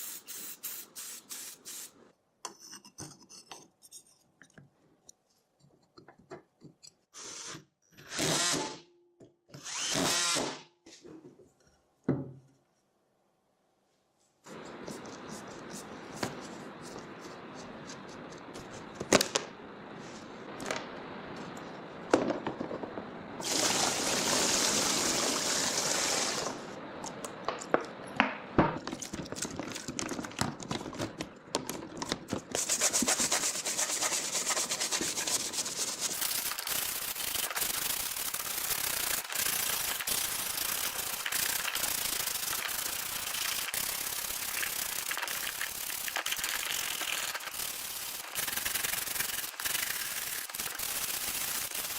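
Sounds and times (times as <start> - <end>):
steady fast rasp: 32.6 - 45.2
scratchy sanding: 32.6 - 51.9.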